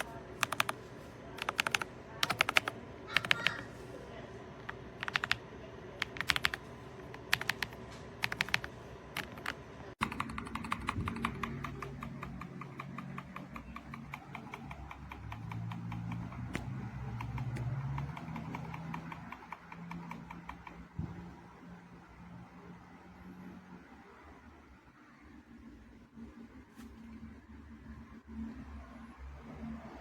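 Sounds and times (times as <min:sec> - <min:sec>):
mechanical keyboard typing: 0:00.0 - 0:03.6, 0:04.6 - 0:21.1.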